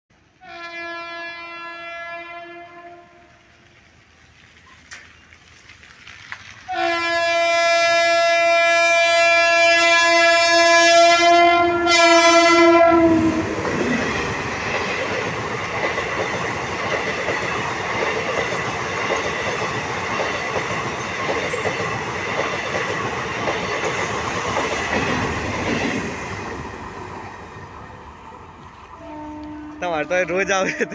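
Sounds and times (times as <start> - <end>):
train horn blasts: 0.4 - 3.5, 6.7 - 13.6, 29.0 - 30.9
train wheels clattering on rails: 13.4 - 27.7.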